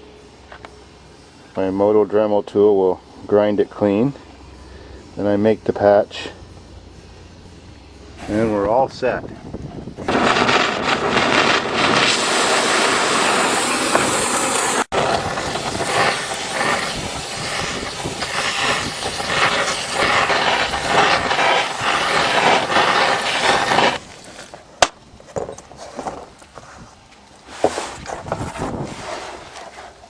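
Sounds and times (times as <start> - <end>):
fire burning with rushing noise: 8.2 - 24.8.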